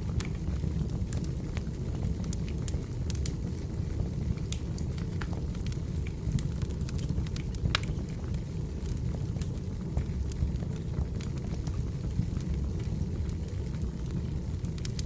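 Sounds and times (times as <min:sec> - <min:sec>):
fire crackling and popping: 0:00.0 - 0:15.0
fire roaring: 0:00.0 - 0:15.0.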